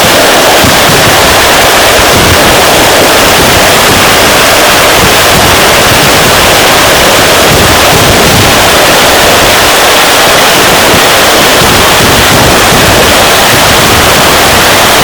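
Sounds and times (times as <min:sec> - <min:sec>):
firecrackers going off: 0:00.0 - 0:15.0.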